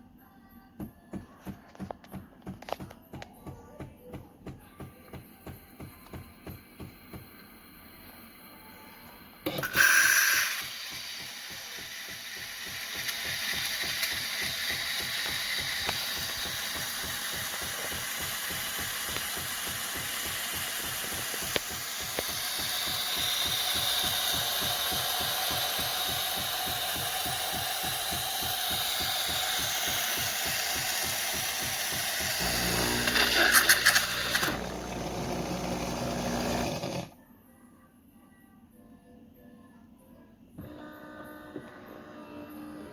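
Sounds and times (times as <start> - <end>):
espresso machine whirring: 9.4 - 37.1
espresso machine clatter: 9.5 - 37.1.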